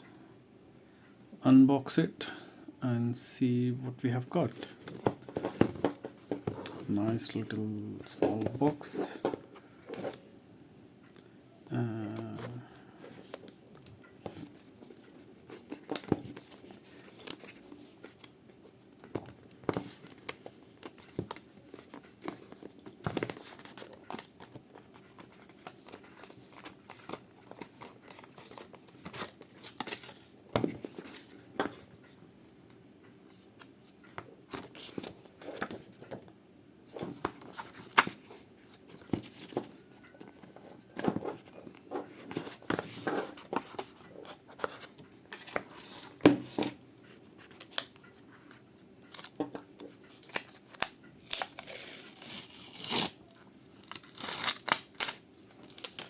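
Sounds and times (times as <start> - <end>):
packaging crinkling and rustling: 47.4 - 56.0
seal strips tearing: 51.2 - 53.2, 53.8 - 55.2.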